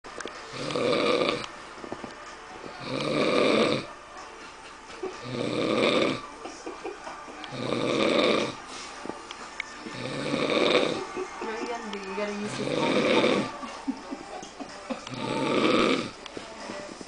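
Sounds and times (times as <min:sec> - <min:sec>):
person snoring: 0:00.5 - 0:01.5, 0:02.7 - 0:03.9, 0:05.2 - 0:06.3, 0:07.5 - 0:08.9, 0:09.9 - 0:11.2, 0:12.4 - 0:13.7, 0:15.0 - 0:16.3
quiet breathing: 0:07.8 - 0:10.4.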